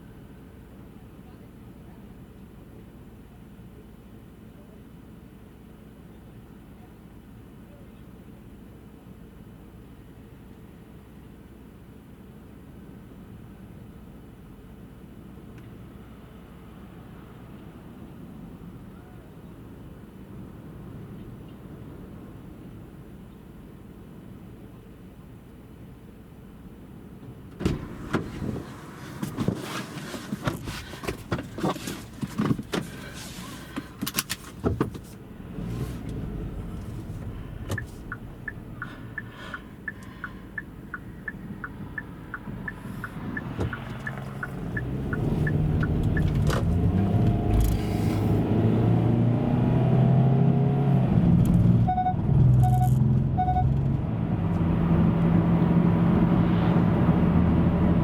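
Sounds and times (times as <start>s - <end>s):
car engine pulling away: 27.5s - 30.8s, 31.7s - 58.0s
clicks and knocks in car cabin: 27.5s - 35.2s, 37.6s - 47.8s
turn signal ticking: 33.7s - 47.8s.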